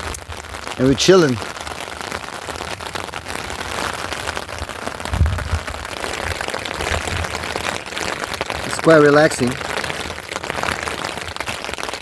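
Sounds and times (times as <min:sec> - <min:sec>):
rain falling: 0:00.0 - 0:12.0
low dull bump: 0:05.1 - 0:05.8.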